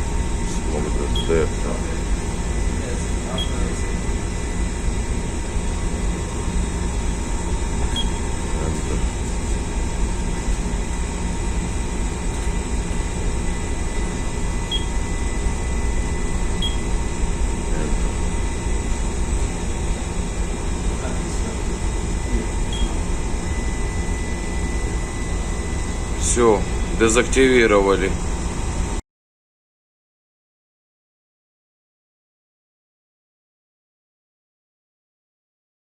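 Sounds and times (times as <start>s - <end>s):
ship machinery hum: 0.0s - 29.0s
thin steady high tone: 0.5s - 2.0s, 2.8s - 4.0s, 20.9s - 27.3s
short high beeps: 1.2s - 1.5s, 3.4s - 3.6s, 7.9s - 8.2s, 14.7s - 15.0s, 16.6s - 16.9s, 22.7s - 23.0s.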